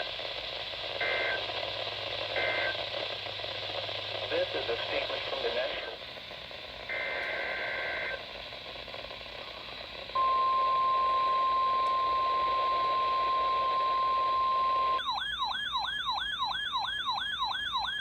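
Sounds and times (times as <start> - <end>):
wailing siren tone: 11.7 - 18.0.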